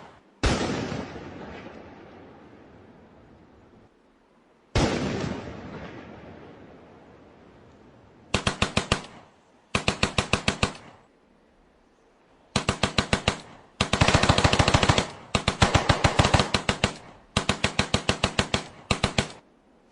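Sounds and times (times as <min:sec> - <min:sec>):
automatic gunfire bursts: 0:08.3 - 0:11.0, 0:12.5 - 0:19.4.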